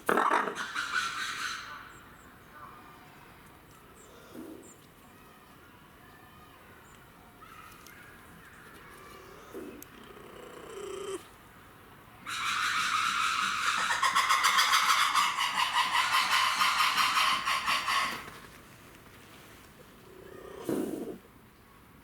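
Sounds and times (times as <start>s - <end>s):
lemur harsh pulsing cry: 12.3s - 18.2s.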